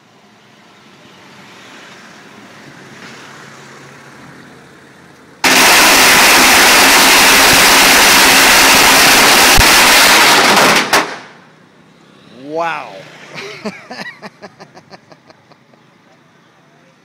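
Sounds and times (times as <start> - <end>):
firecrackers crackling: 5.4 - 11.5.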